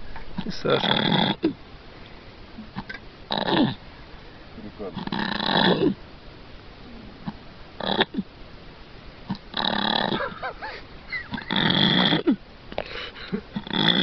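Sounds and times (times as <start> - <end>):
man snoring loudly: 11.5 - 12.3, 13.6 - 14.0.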